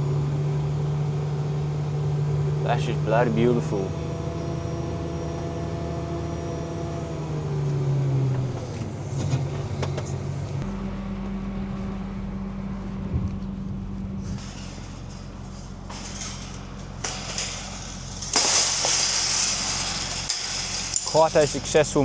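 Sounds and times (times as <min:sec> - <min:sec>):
tractor engine running: 0:08.6 - 0:22.0.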